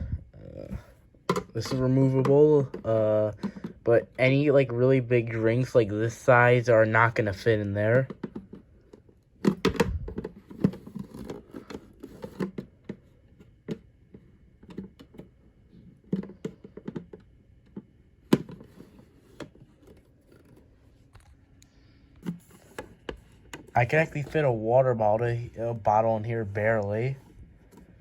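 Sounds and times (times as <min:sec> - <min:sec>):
plastic clicks and knocks: 0:01.2 - 0:03.9, 0:08.0 - 0:21.3, 0:22.2 - 0:24.4.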